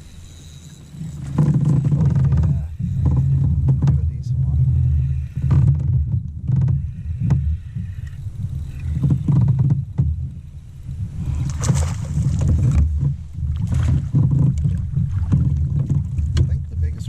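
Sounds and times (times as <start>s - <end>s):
wind rumbling: 0.9s - 17.0s
microphone handling noise: 1.0s - 8.2s, 11.2s - 17.0s.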